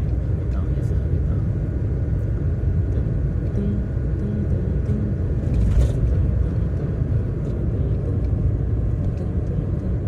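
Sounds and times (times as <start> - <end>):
car road rumble from inside: 0.0 - 10.0.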